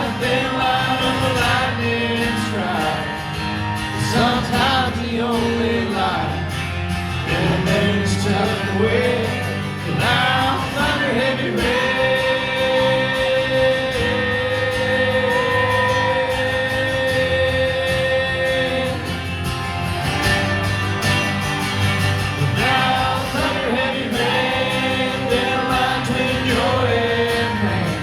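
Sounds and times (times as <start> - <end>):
country band playing: 0.0 - 28.0
person singing: 7.3 - 19.2, 22.5 - 28.0.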